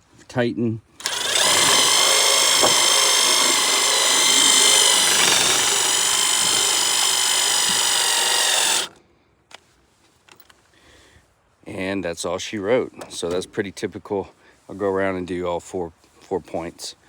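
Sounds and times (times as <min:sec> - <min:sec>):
power gun motor whine: 0:01.0 - 0:09.0.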